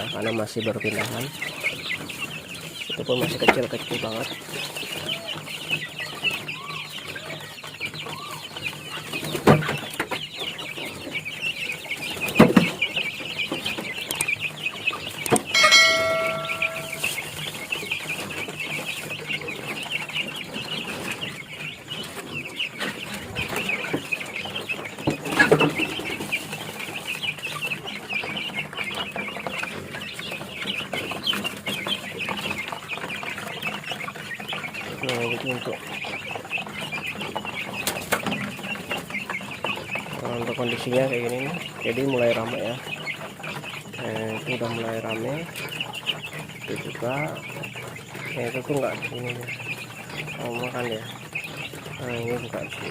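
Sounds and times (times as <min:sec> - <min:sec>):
chicks peeping and chirping: 0:00.0 - 0:52.9
sharp knocks: 0:15.6 - 0:17.2.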